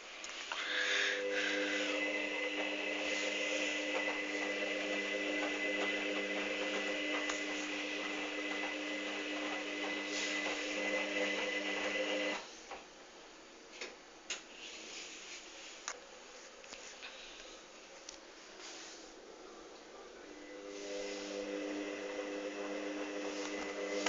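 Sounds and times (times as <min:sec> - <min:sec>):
washing machine motor humming: 0:00.0 - 0:12.4, 0:19.9 - 0:24.0.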